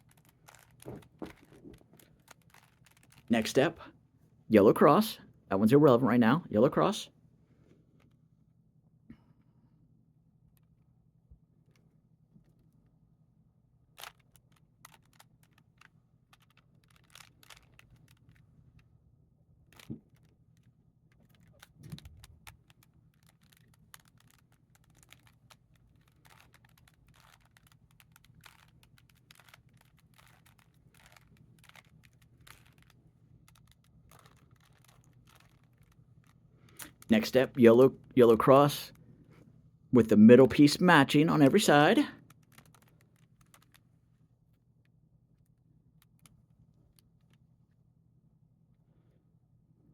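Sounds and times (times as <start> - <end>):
puzzle cube clicking: 0.0 - 3.7, 13.9 - 18.4, 19.7 - 39.0, 40.5 - 43.8
low steady hum: 0.0 - 49.9.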